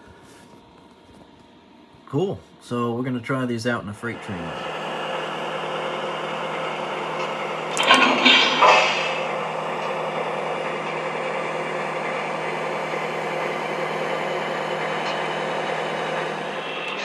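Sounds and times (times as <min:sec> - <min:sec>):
model train engine rumble: 0:04.0 - 0:17.0.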